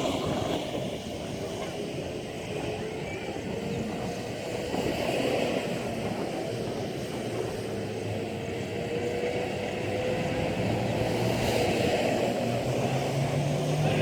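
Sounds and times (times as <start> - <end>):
vehicle engine droning: 0.0 - 14.0.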